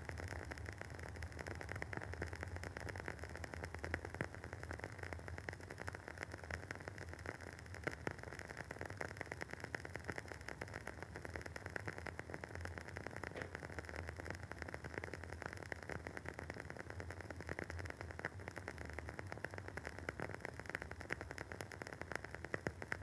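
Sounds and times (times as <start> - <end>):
candle wick crackling: 13.3 - 13.8.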